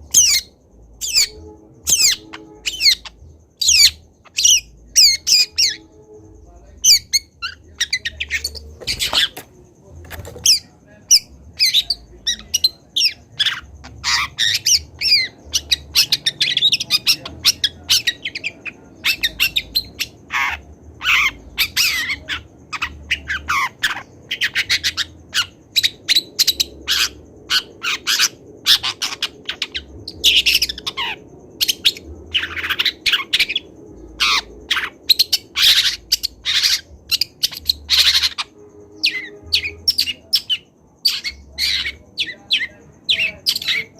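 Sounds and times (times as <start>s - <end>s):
bird chirping and squawking: 0.0s - 6.1s, 6.8s - 43.9s.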